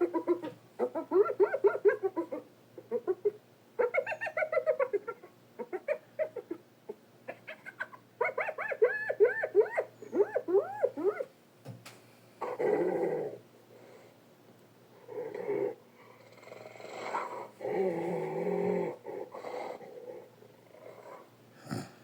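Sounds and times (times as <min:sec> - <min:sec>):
cartoon hyena yipping and giggling: 0:00.0 - 0:11.3.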